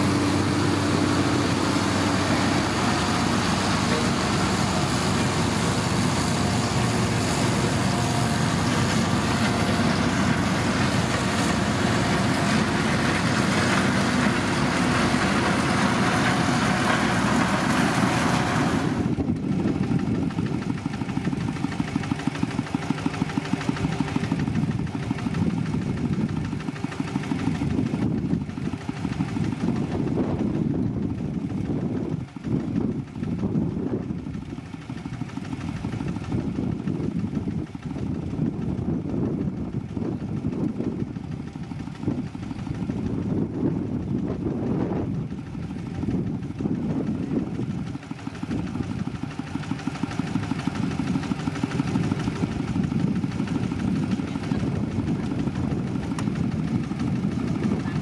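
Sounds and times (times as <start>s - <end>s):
loud rushing noise: 0.0s - 19.2s
heavy diesel engine running: 0.0s - 58.0s.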